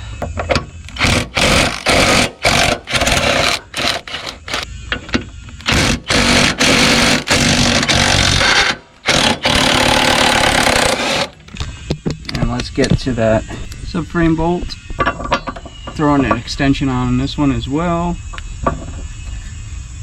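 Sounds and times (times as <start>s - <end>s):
impact wrench bursts: 0.9s - 4.6s, 5.6s - 11.4s.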